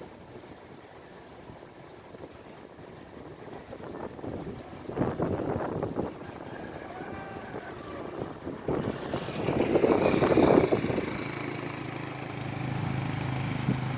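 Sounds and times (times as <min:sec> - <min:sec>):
vehicle engine humming: 0:07.3 - 0:13.9.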